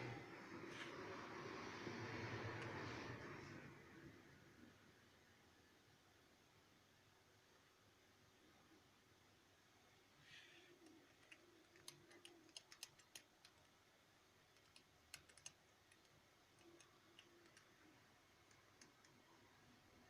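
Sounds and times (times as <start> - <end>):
faint clicks and taps: 10.7 - 13.8, 14.5 - 19.7.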